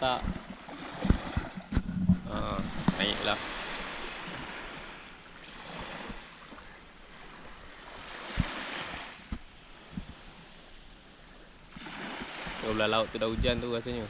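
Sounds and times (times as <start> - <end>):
low thumps: 0.0 - 3.2
wind on microphone: 0.0 - 6.3, 7.4 - 10.7, 11.8 - 14.0
small sea waves washing: 0.0 - 14.0.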